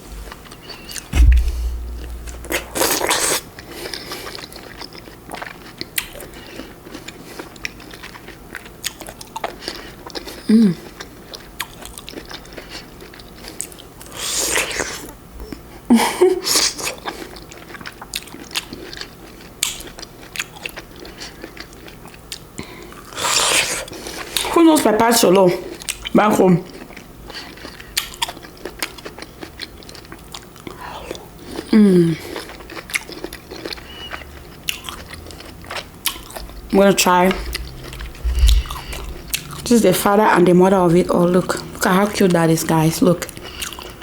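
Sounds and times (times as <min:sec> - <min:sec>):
heavy low thump: 0:01.1 - 0:03.4, 0:37.4 - 0:39.6
person biting and chewing fruit: 0:32.3 - 0:36.6, 0:37.2 - 0:39.7, 0:43.2 - 0:44.0.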